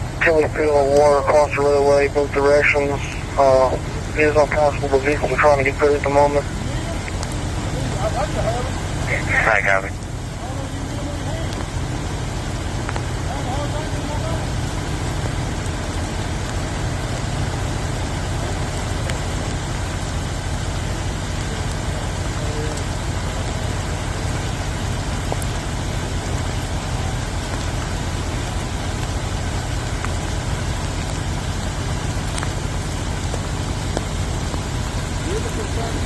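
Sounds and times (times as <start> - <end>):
vehicle engine idling: 0.0 - 36.0.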